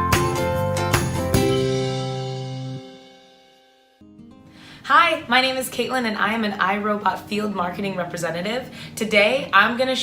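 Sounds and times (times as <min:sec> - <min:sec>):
bell-like notes over a beat: 0:00.2 - 0:04.0.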